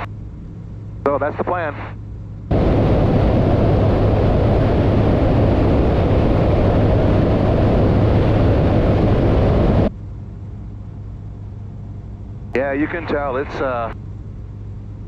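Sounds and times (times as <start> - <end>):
aircraft engine and airflow rushing: 0.0 - 15.0.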